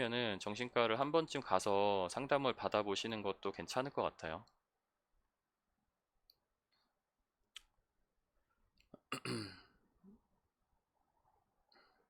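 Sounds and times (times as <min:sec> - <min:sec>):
person clearing throat: 0:09.1 - 0:09.8.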